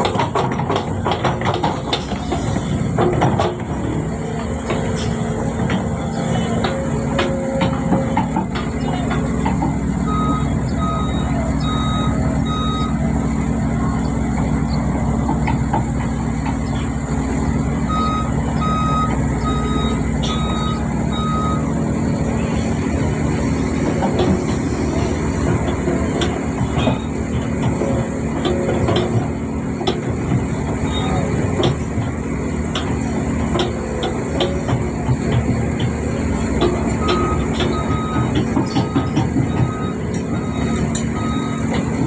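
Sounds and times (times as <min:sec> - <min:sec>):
diesel engine running: 0:00.0 - 0:42.0
reversing alarm beeps: 0:10.0 - 0:13.0, 0:17.9 - 0:21.8, 0:30.8 - 0:31.9, 0:35.9 - 0:42.0.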